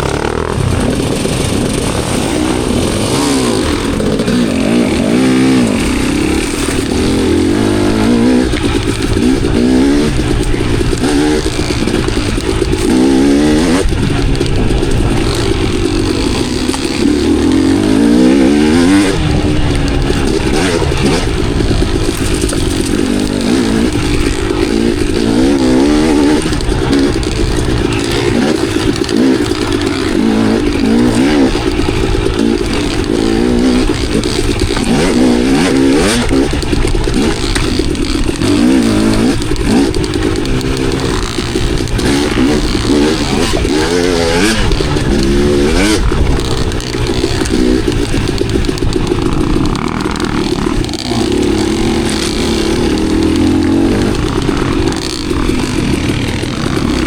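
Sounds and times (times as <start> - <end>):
dirt bike engine revving: 0.0 - 57.0.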